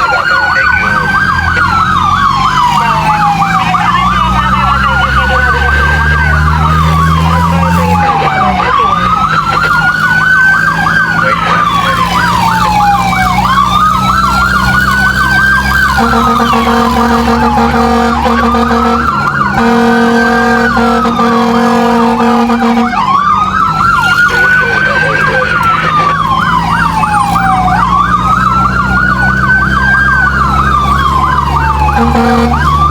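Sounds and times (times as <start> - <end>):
fast yelping siren: 0.0 - 32.9
fire truck siren wailing: 0.0 - 32.9
truck engine hum: 0.0 - 32.9
truck horn: 15.8 - 23.2, 24.3 - 26.8, 31.8 - 32.9.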